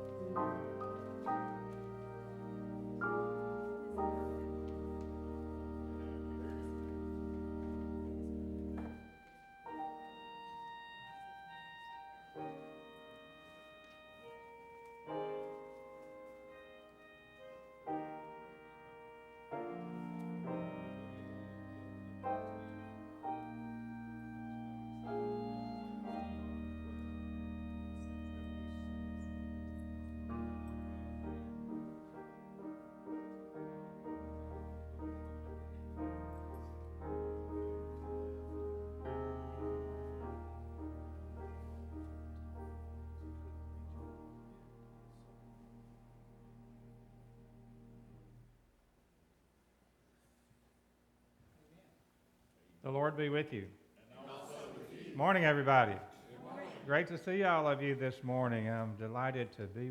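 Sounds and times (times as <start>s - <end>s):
slow keyboard chords: 0.0s - 49.0s
deep sustained bass notes: 36.7s - 48.4s.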